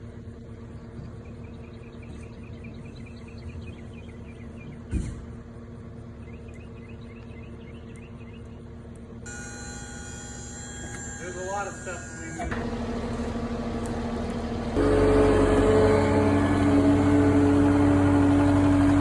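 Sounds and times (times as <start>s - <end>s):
steady low hum: 12.1s - 19.0s.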